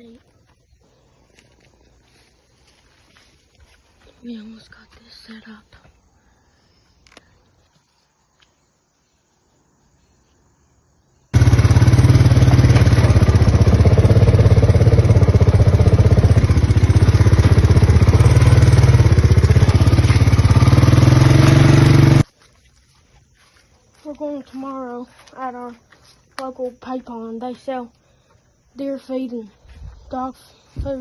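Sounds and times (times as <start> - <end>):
engine running steadily: 11.4 - 22.2.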